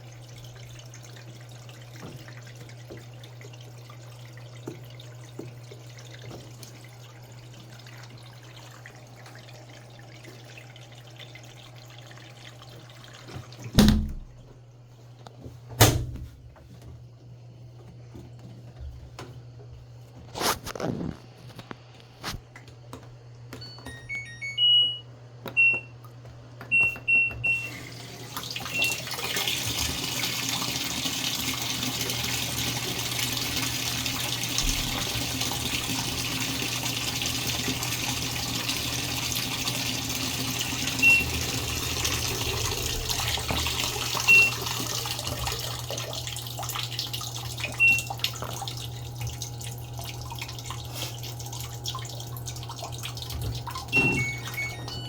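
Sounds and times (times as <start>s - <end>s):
washing machine beeping: 0.1s - 14.4s, 23.5s - 55.0s
water rushing into machine: 27.5s - 55.0s.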